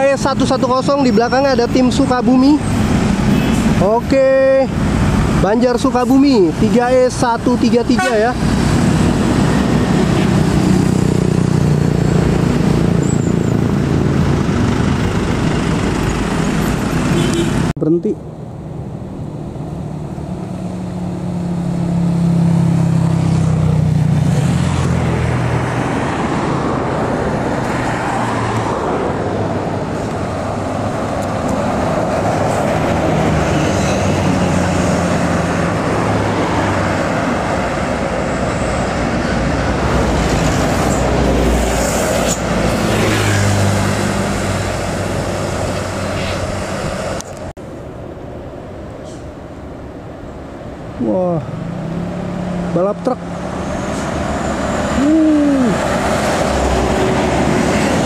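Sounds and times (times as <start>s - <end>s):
diesel engines of trucks and buses: 0.0s - 58.0s
tyre and road noise: 0.0s - 58.0s.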